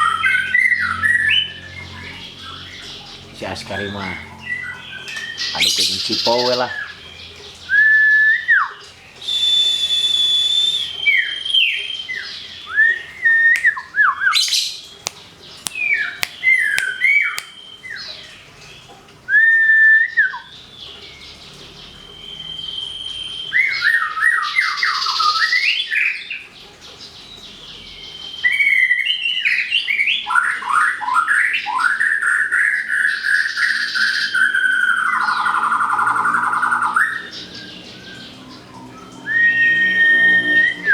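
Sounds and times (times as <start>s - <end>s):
long buzzy bird trill: 0.0s - 13.7s, 14.4s - 18.3s, 32.0s - 40.9s
birds singing whistled phrases: 0.0s - 26.4s, 27.0s - 40.9s.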